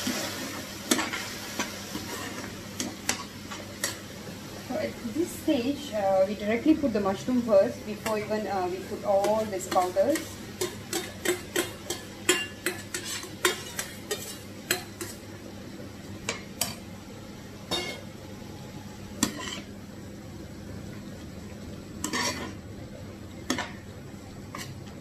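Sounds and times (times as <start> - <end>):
utensil knocking and scraping a pan: 9.1 - 15.2, 22.1 - 22.6.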